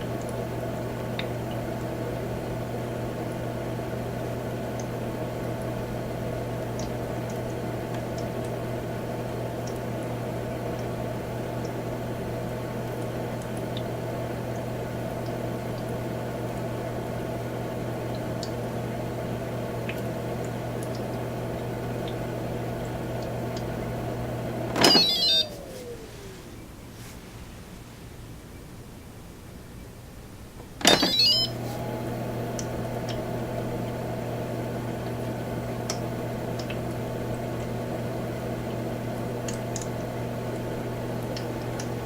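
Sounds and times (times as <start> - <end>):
humidifier humming: 0.0 - 42.0
falling whine: 23.9 - 27.1.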